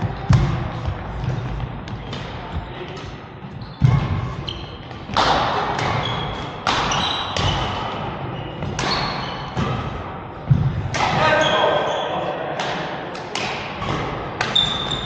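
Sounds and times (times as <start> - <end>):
sneaker squeaks on court floor: 3.4 - 5.2, 5.8 - 9.8, 11.2 - 12.3, 13.8 - 15.0
racket hitting shuttlecock: 4.8 - 10.0, 12.6 - 15.0.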